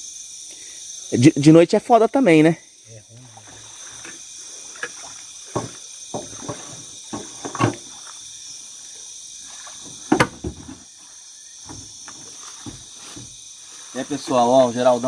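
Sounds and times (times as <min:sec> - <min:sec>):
night insects chorus: 0:00.0 - 0:15.0
boat knocking and splashing: 0:03.5 - 0:08.3, 0:09.5 - 0:11.0, 0:11.6 - 0:13.4.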